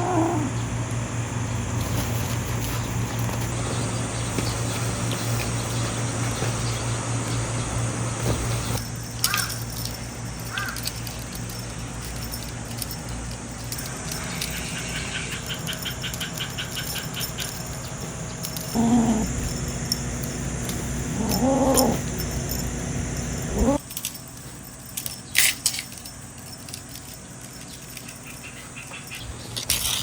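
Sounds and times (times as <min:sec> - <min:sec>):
cat meowing: 0:00.0 - 0:00.5
steady low hum: 0:00.0 - 0:30.0.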